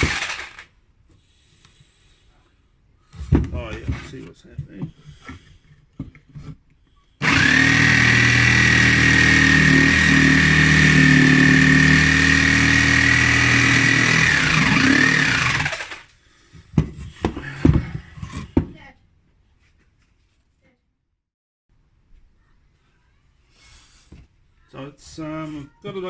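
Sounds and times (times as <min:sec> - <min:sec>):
power tool motor whining: 0:00.0 - 0:00.7, 0:07.2 - 0:16.1.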